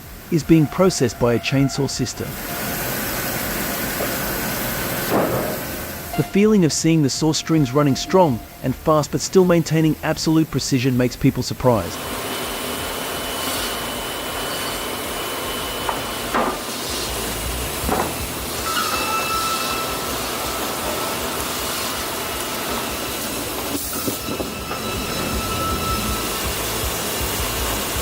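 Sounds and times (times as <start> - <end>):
faint high whine: 5.4 - 28.0
saw cutting timber: 12.0 - 28.0.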